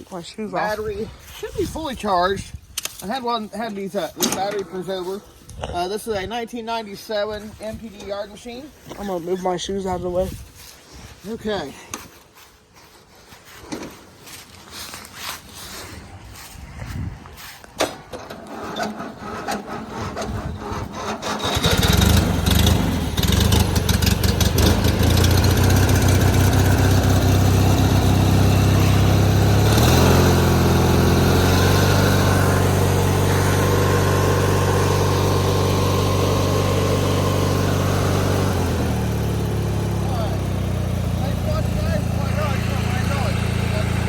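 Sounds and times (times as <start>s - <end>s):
lawnmower engine running: 17.4s - 44.0s
engine cranking: 17.8s - 44.0s.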